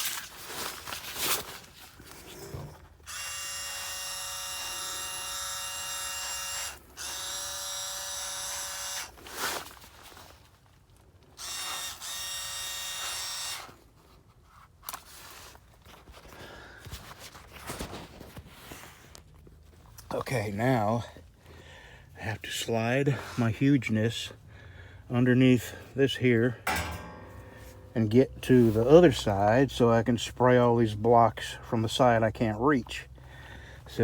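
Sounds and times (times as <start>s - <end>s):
rustling and handling noise: 0.0s - 2.9s, 13.9s - 20.0s.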